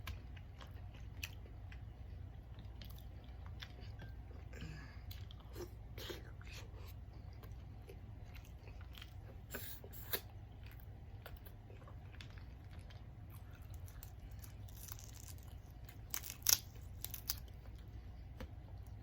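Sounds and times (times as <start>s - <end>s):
low steady hum: 0.0s - 19.0s
person chewing: 0.0s - 19.0s
seafood shells cracking and tearing: 13.7s - 17.7s.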